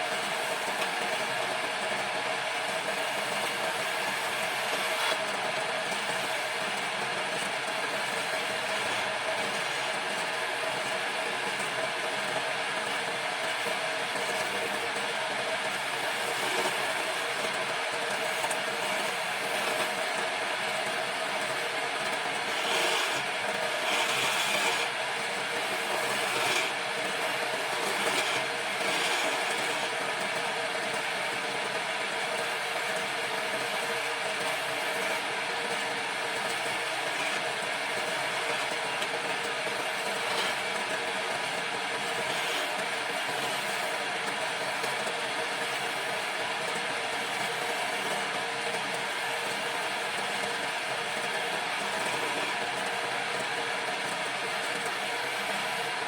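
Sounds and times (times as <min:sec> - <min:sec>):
wood lathe running: 0:00.0 - 0:56.0
turning tool cutting wood: 0:02.6 - 0:12.0, 0:13.4 - 0:31.8, 0:32.6 - 0:44.0, 0:51.8 - 0:53.6.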